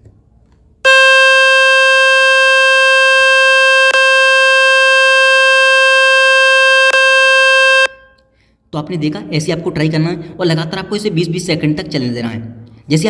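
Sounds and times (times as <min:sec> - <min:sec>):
buzzy tone from phone speaker: 0:00.9 - 0:08.0.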